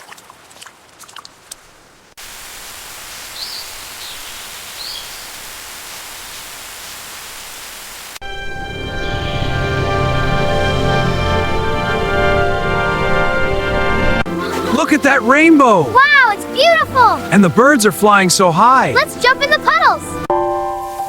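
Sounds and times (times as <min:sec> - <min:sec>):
steady rain hiss: 0:01.4 - 0:08.8, 0:14.7 - 0:21.0
music: 0:08.2 - 0:21.0.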